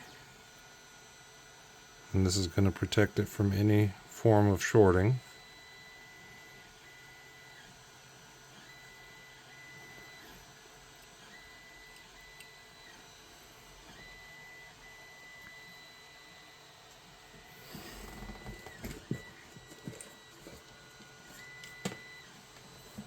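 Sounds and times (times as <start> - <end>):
faint electronic whine: 0.0 - 23.0.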